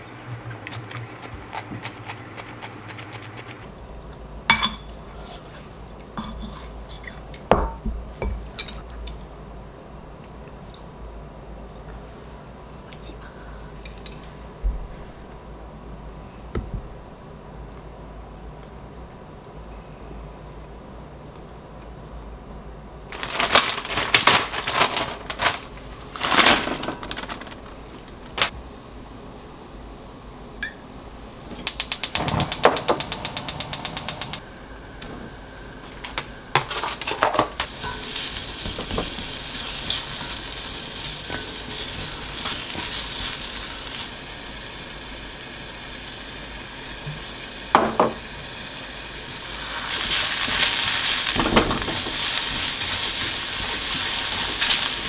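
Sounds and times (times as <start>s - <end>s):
pots and utensils clinking: 4.5s - 5.0s, 7.4s - 8.8s, 36.0s - 44.1s
sizzling hiss: 31.6s - 55.0s
fast run of clicks: 31.7s - 34.4s.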